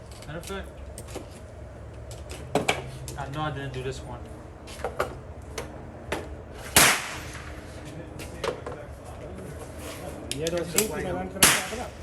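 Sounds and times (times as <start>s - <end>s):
pistol gunshots: 6.8s - 7.6s, 11.4s - 12.0s.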